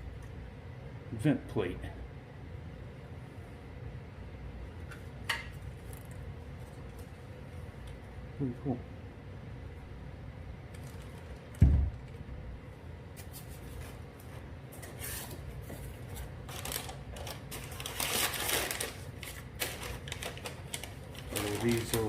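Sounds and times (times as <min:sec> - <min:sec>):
packaging rustling and clicking: 0:10.7 - 0:11.6, 0:15.7 - 0:22.0
low thump: 0:11.6 - 0:12.0.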